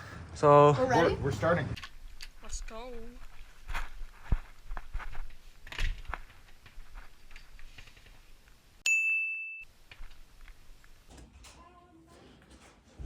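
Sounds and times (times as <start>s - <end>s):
footsteps: 1.7s - 8.6s
bright bell ding: 8.8s - 9.7s.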